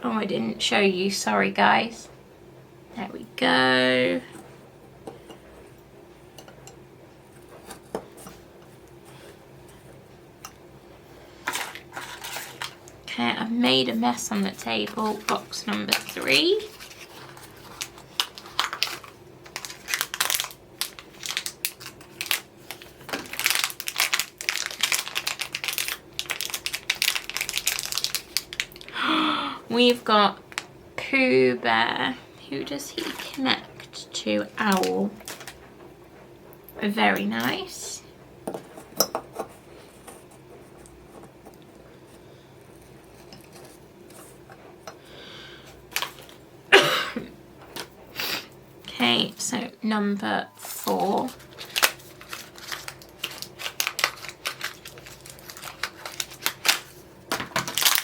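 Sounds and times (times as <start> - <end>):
cardboard packaging clicks and crinkles: 11.4 - 12.8, 14.8 - 28.9, 34.7 - 35.6, 45.9 - 46.4, 50.7 - 58.0.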